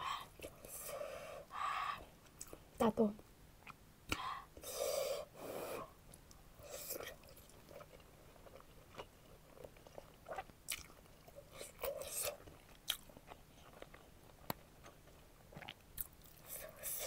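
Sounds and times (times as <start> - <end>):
wet chewing: 6.1 - 16.5.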